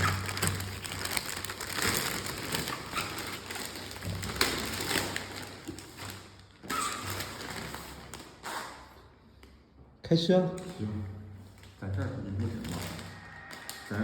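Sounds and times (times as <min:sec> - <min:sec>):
bread wrapping rustling: 0:00.0 - 0:08.4.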